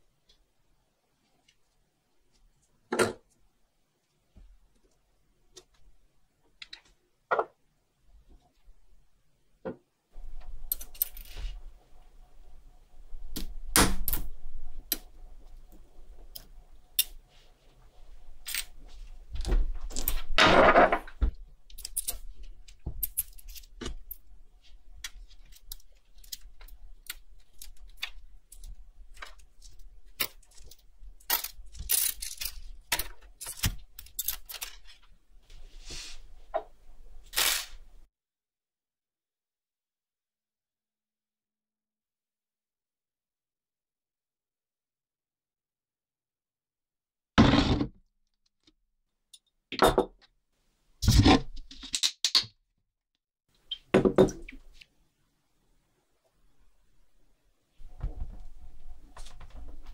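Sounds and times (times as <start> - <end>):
small metal parts clinking: 21.7 - 22.3, 25.5 - 35.0.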